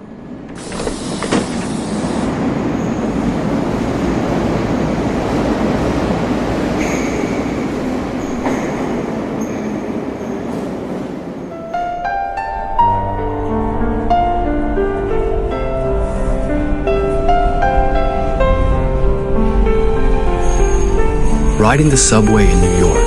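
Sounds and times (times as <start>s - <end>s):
subway train rumbling on rails: 0.0s - 23.0s
high wheel squeals: 6.8s - 10.5s, 20.4s - 23.0s.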